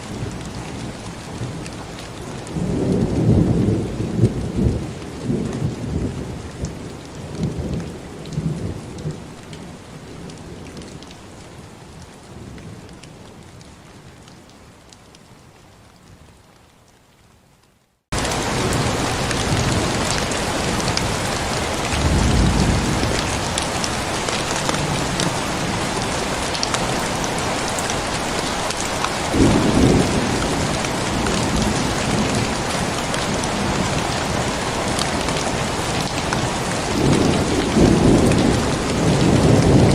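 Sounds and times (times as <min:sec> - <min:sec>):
heavy rain: 0:00.0 - 0:39.9
thunder rumbling: 0:18.2 - 0:39.9.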